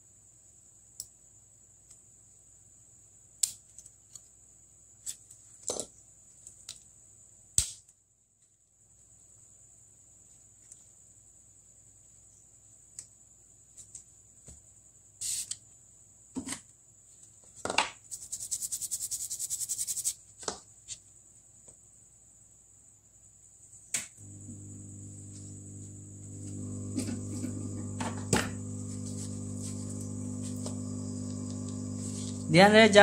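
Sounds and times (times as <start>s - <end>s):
steady high-pitched whine: 24.2s - 33.0s.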